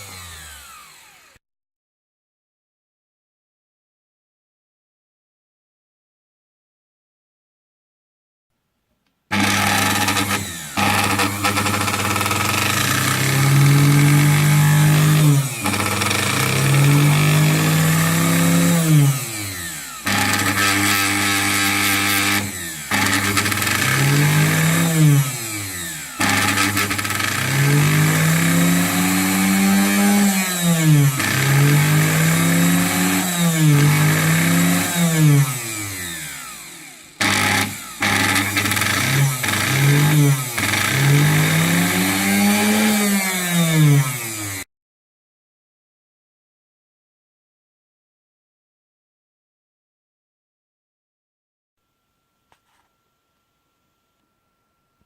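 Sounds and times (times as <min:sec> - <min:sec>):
sewing machine motor whining: 0:00.0 - 0:01.4, 0:09.3 - 0:44.6.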